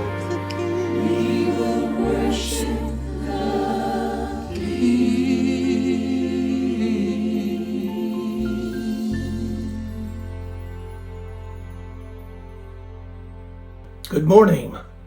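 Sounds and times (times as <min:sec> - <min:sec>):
choir singing a worship song: 0:00.0 - 0:11.3
low bass notes: 0:00.0 - 0:15.0.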